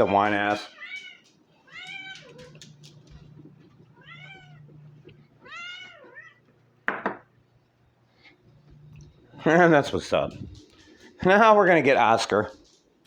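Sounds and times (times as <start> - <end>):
cat meowing: 0.7 - 2.6, 3.9 - 4.7, 5.4 - 6.4.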